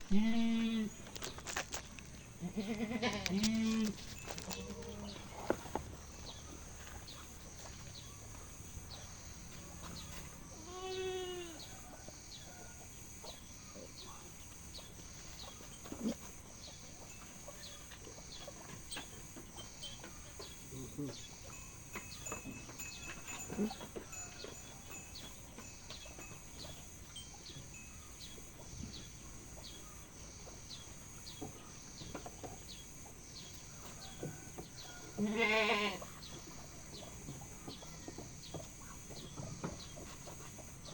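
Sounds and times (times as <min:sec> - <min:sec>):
young goat bleating: 0:00.1 - 0:01.0, 0:02.4 - 0:05.3, 0:10.6 - 0:11.6, 0:35.2 - 0:36.2.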